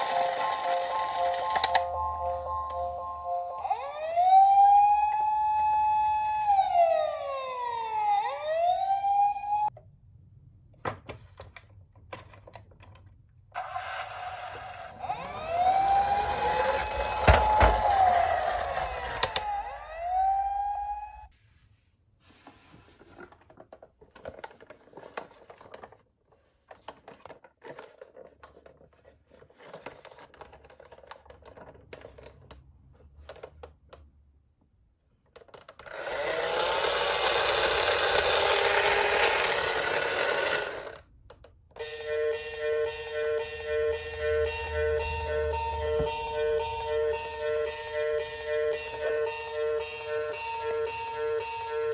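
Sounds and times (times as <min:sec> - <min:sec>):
toy clicks and rattles: 0:00.0 - 0:02.0, 0:35.8 - 0:41.0
toy electronic siren: 0:00.0 - 0:09.7, 0:13.6 - 0:21.3, 0:36.0 - 0:40.9, 0:41.8 - 0:51.9.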